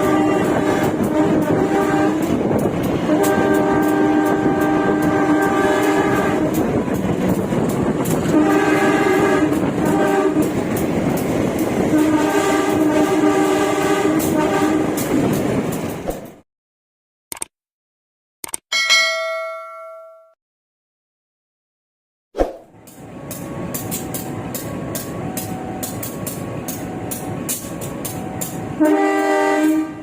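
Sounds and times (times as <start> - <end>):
locomotive horn blasts: 0.0 - 2.4, 3.0 - 6.6, 8.2 - 10.5, 11.9 - 14.9, 28.3 - 30.0
rumble of moving train: 0.0 - 16.4, 22.7 - 30.0
wheels clicking over rail joints: 5.9 - 8.4, 22.8 - 28.8.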